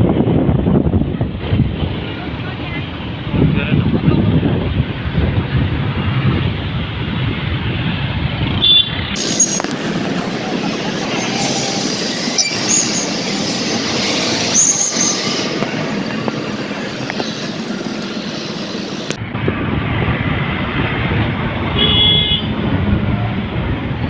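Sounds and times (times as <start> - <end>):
deep traffic rumble: 0.0 - 24.0
road traffic engines: 0.0 - 24.0
car horn toots: 8.6 - 9.7, 21.8 - 22.6.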